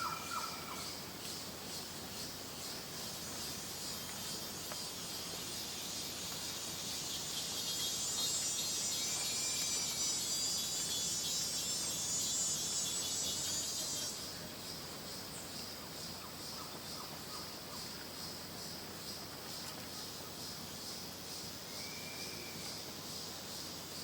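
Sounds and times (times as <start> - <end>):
insect chorus buzzing trill: 0.0 - 24.0.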